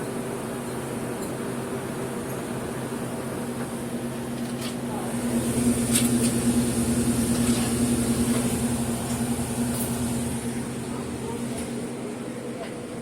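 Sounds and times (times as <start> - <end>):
refrigeration equipment humming: 0.0 - 13.0.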